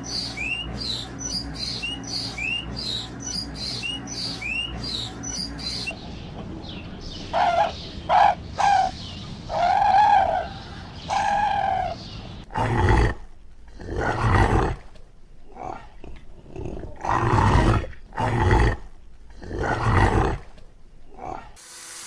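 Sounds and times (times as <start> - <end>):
harsh animal calls: 7.3 - 14.8.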